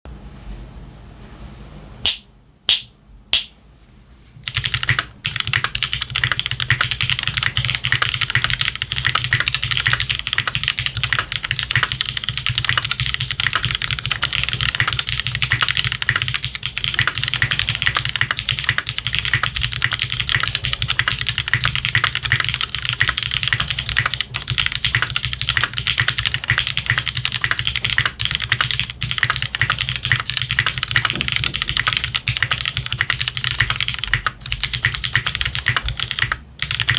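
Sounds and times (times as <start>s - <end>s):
mechanical keyboard typing: 4.4s - 36.9s.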